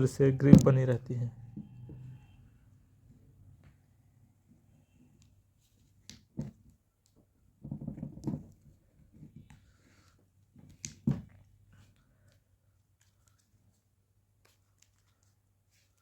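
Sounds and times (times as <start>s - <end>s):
taps and clicks of small objects: 10.6s - 11.4s.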